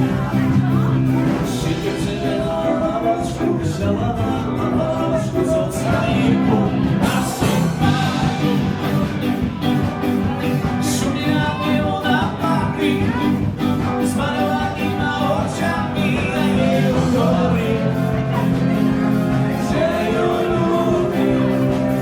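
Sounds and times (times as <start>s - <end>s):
dance band music: 0.0s - 22.0s.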